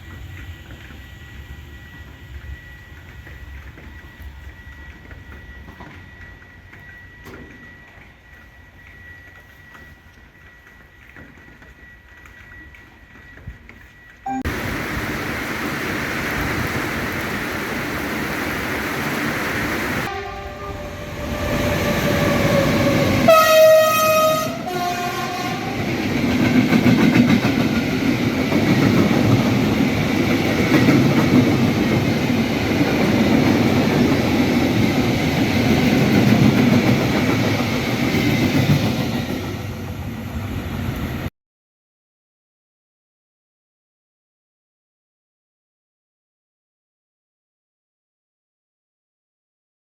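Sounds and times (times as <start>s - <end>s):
train rumbling: 0.0s - 41.3s
train horn: 20.0s - 25.9s
wheels clattering on rails: 25.6s - 40.1s.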